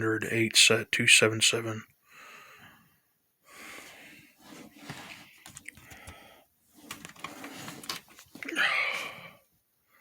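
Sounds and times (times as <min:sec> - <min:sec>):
person breathing: 0:02.0 - 0:06.6, 0:08.4 - 0:10.0.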